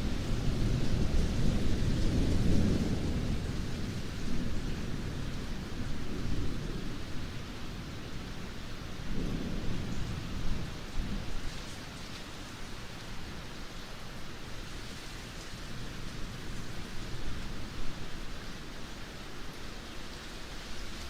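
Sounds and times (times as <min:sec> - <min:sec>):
low rolling thunder: 0:00.0 - 0:11.6
steady rainfall: 0:00.0 - 0:21.0.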